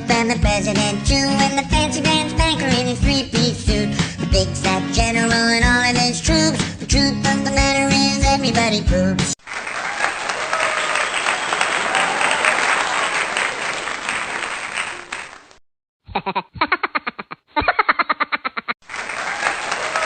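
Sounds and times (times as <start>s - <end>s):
applause-like crowd noise: 9.4s - 15.6s, 18.8s - 20.0s.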